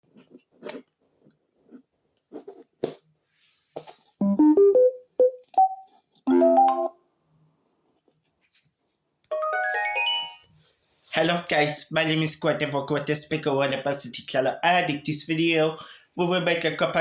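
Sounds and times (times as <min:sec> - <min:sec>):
electronic start-up chimes: 0:06.3 - 0:06.9, 0:09.3 - 0:10.4.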